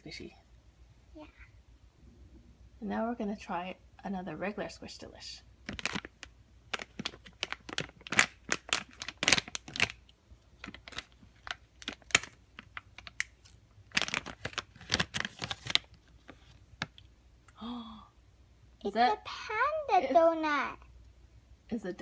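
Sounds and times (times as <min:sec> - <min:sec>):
plastic packaging tearing and crinkling: 0:05.6 - 0:17.0.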